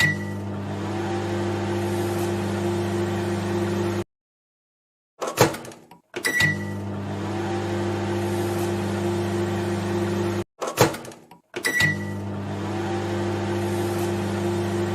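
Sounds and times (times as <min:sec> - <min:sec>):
microwave oven humming: 0:00.0 - 0:04.0, 0:06.4 - 0:10.4, 0:11.7 - 0:14.9.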